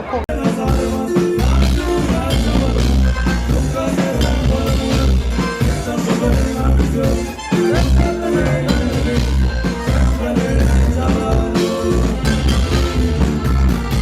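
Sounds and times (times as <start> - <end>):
band playing live music: 0.0 - 14.0
bass line: 0.0 - 14.0.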